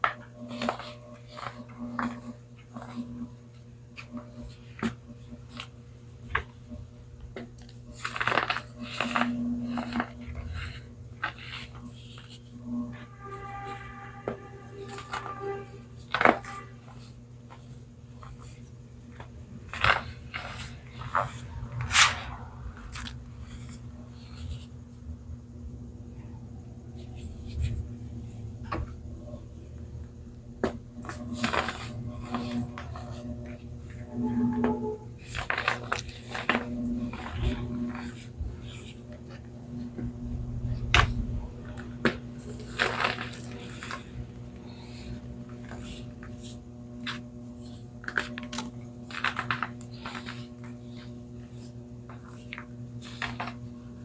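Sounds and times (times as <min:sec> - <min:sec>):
steady low hum: 0:00.0 - 0:54.0
baking soda crunching: 0:42.3 - 0:54.0.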